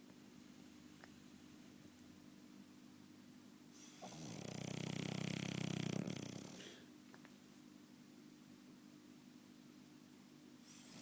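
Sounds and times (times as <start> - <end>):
faint steady hum: 0.0 - 11.0
dog snoring: 3.8 - 6.9, 10.6 - 11.0.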